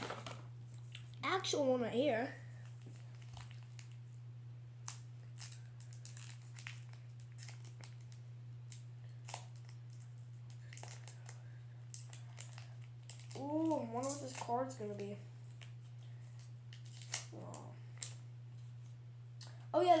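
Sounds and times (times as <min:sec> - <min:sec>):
foil wrapper crinkling and tearing: 0:00.0 - 0:00.4, 0:02.7 - 0:04.1, 0:04.8 - 0:18.2
steady low hum: 0:00.0 - 0:20.0.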